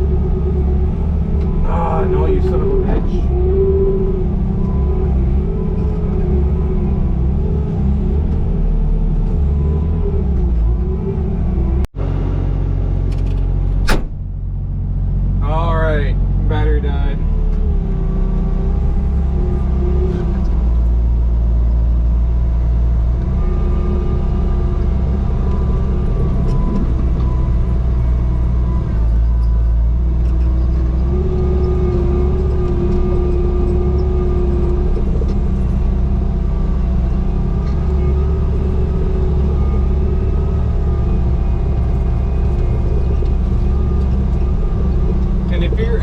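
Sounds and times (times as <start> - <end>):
diesel engine running: 0.0 - 46.0.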